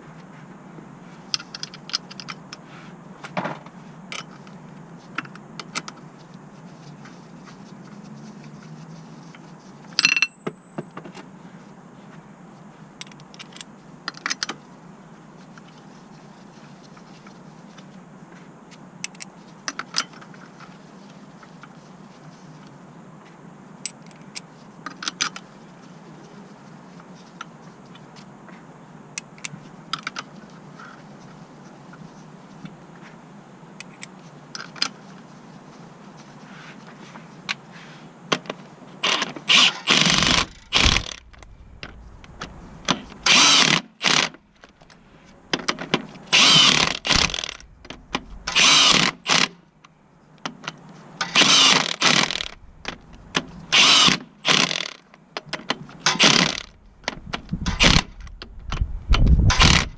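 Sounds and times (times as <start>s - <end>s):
metal tools clinking: 10.0s - 10.8s
steady low hum: 40.0s - 43.4s, 44.2s - 50.2s, 52.2s - 53.8s.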